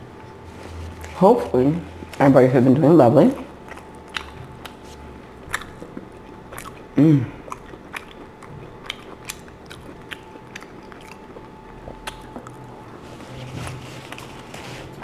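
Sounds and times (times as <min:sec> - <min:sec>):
chewing crusty bread: 0:03.1 - 0:15.0
person humming: 0:07.0 - 0:07.5.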